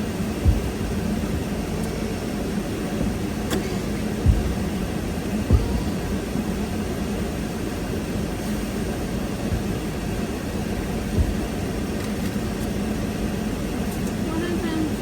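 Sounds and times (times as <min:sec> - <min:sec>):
car road and engine rumble: 0:00.0 - 0:15.0
low thump: 0:00.4 - 0:01.2, 0:03.0 - 0:06.8, 0:11.2 - 0:11.7.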